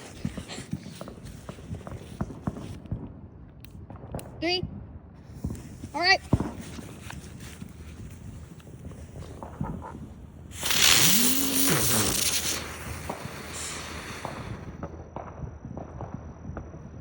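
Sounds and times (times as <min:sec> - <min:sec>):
firework hiss of sparks: 0:00.0 - 0:02.8, 0:05.4 - 0:14.8.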